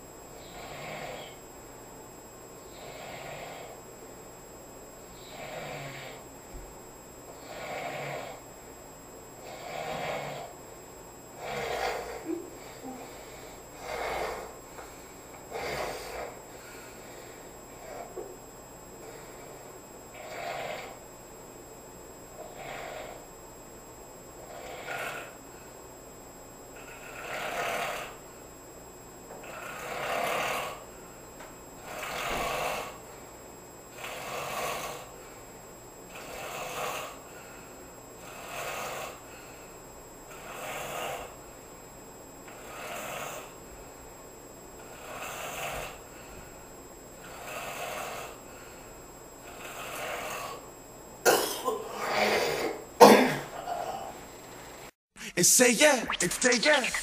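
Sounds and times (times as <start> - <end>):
person snoring: 0.4 - 1.4, 2.7 - 3.8, 5.2 - 6.2, 7.4 - 8.4, 9.4 - 10.5, 11.4 - 14.6, 22.4 - 23.2, 24.5 - 25.4, 26.8 - 28.2, 29.4 - 30.8, 31.8 - 33.0, 34.0 - 35.1, 36.1 - 37.2, 38.2 - 39.2, 40.3 - 41.4, 42.6 - 43.6, 44.9 - 46.0, 47.2 - 48.4, 49.4 - 50.7, 51.6 - 52.8.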